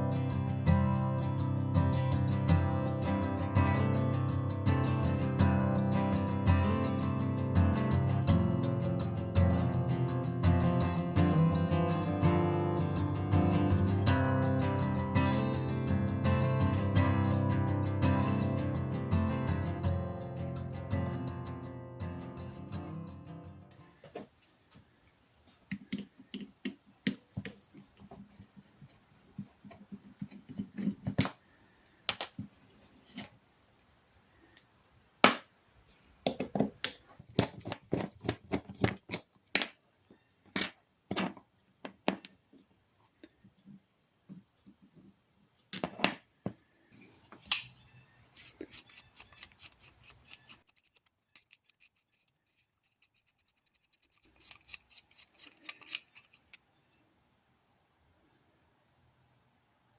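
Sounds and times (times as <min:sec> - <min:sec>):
metal tools clicking and scraping: 0:47.0 - 0:57.0.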